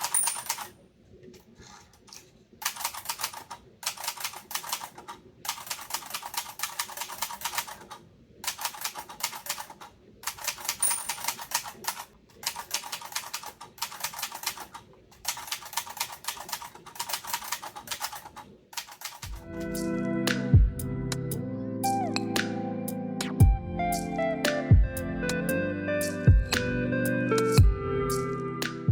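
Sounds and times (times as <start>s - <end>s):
typewriter keystroke clicks: 2.1s - 19.4s.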